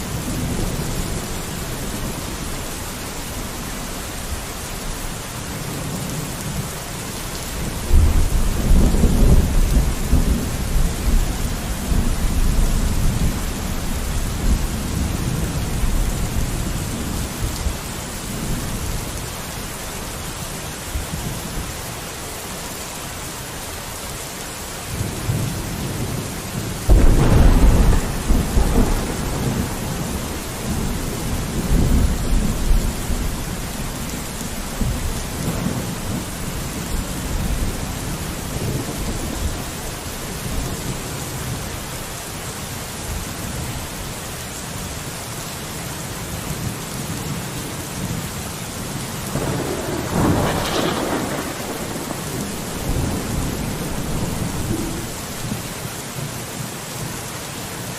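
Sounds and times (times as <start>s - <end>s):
steady rain: 0.0s - 57.9s
thunder rumbling: 7.5s - 19.2s, 25.0s - 41.6s, 49.2s - 55.8s.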